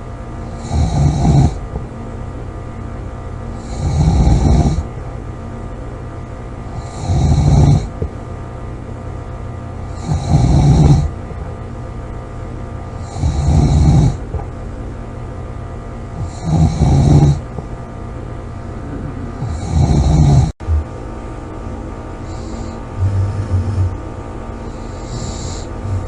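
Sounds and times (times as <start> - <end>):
steady low hum: 0.0 - 26.0
person snoring loudly: 0.4 - 1.6, 3.6 - 4.9, 6.8 - 8.0, 9.9 - 11.2, 13.0 - 14.2, 16.2 - 17.5, 18.8 - 20.6, 22.2 - 24.0, 24.7 - 26.0.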